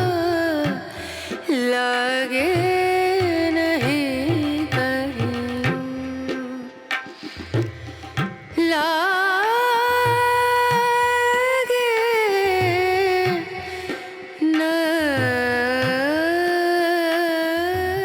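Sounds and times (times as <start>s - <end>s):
tabla strokes: 0.0s - 18.0s.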